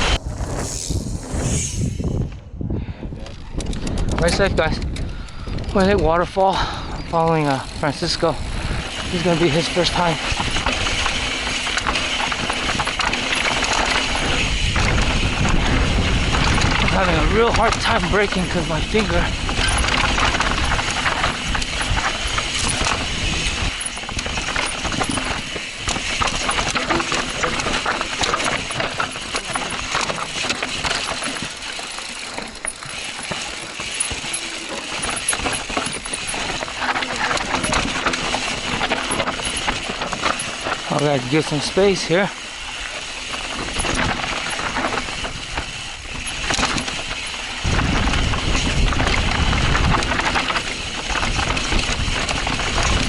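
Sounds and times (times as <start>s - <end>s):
bike clattering and rattling: 0.0s - 2.5s, 3.1s - 53.0s
low rumble: 0.0s - 3.2s
bike tyres on dirt and rocks: 0.0s - 53.0s.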